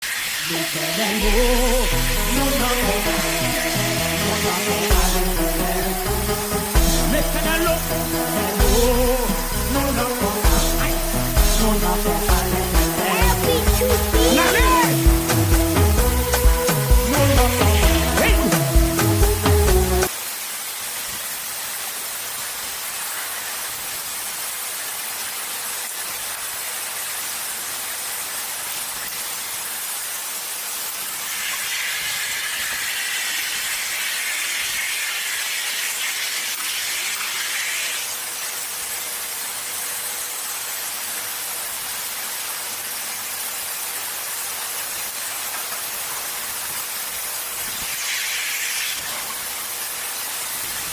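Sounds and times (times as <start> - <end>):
hot air welder hissing: 0.0 - 15.4, 31.2 - 38.4, 47.6 - 49.8
louder higher hiss: 0.0 - 24.0, 30.2 - 41.2, 44.0 - 50.9.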